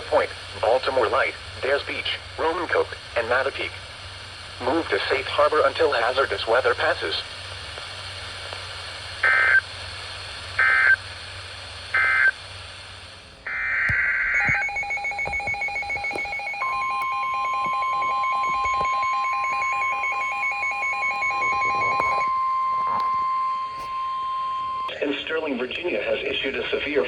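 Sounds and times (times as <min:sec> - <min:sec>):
steady alarm tone: 0:09.2 - 0:09.7, 0:10.6 - 0:11.1, 0:11.9 - 0:12.4, 0:13.4 - 0:24.9
digital data chirp bursts: 0:13.5 - 0:22.5
warbling electronic alert beep: 0:14.4 - 0:24.9.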